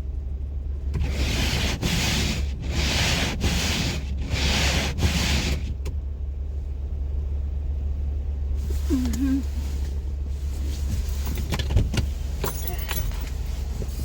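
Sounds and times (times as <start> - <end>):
idling car hum: 0.0 - 14.0
windshield wipers rubbing on glass: 1.0 - 5.8.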